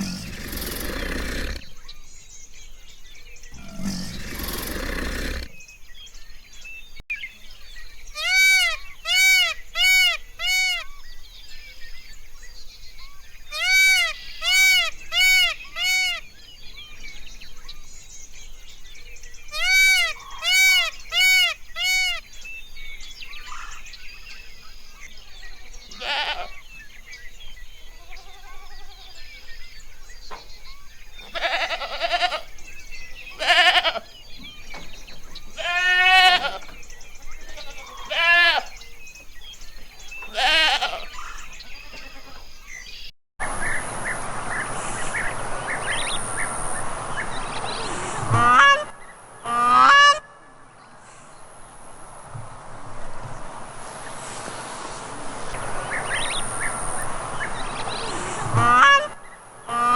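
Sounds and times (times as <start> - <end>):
goats bleating: 31.3 - 32.5, 33.3 - 34.1, 35.5 - 36.8, 37.4 - 38.8, 40.3 - 41.1
steady rushing noise: 51.4 - 58.6.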